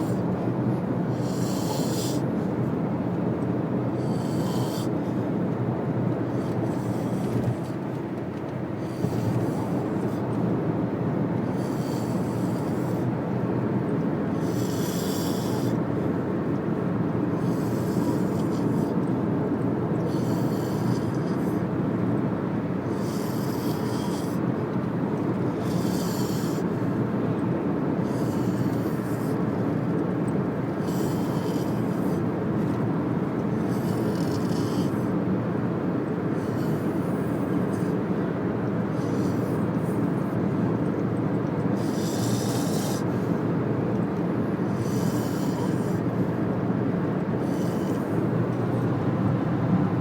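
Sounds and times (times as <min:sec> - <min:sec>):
man snoring: 0:01.1 - 0:02.3, 0:04.0 - 0:05.0, 0:14.4 - 0:15.8, 0:22.8 - 0:24.4, 0:25.6 - 0:26.7, 0:28.0 - 0:29.5, 0:30.7 - 0:32.0, 0:33.5 - 0:35.0, 0:41.8 - 0:43.1, 0:44.7 - 0:46.1
steady low rumble: 0:48.1 - 0:50.0.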